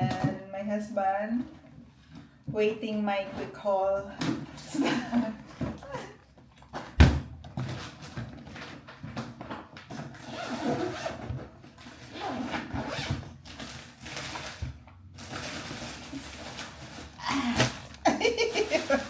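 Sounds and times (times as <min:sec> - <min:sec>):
plastic and fabric rustling: 0:00.0 - 0:19.0
zipper being drawn open: 0:10.2 - 0:13.2.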